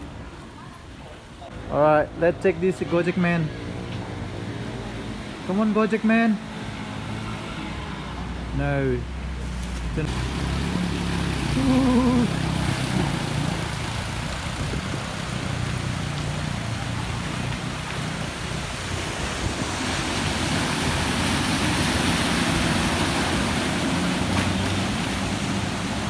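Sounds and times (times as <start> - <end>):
vehicle engine running: 9.5 - 19.2
rushing floodwater: 9.8 - 26.0.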